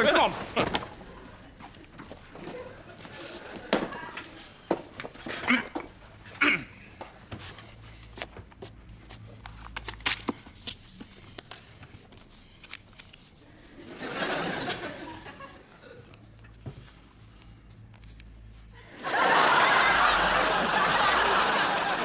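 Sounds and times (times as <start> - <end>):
audience laughing: 2.4 - 4.1, 13.8 - 16.2, 18.8 - 22.0.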